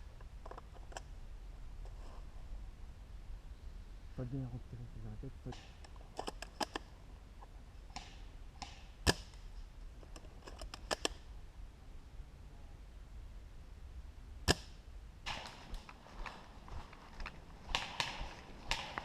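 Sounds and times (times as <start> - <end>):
airsoft gun shots: 14.5 - 15.8, 17.7 - 19.0.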